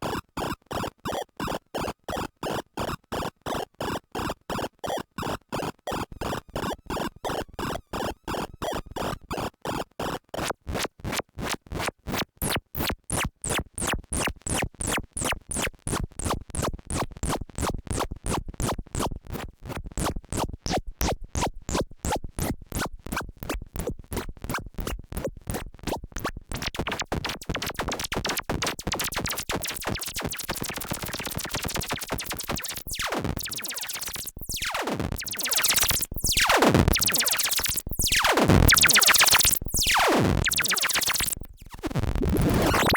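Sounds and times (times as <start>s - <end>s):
synthesizer sequence of buzzy notes: 26.6s - 42.9s.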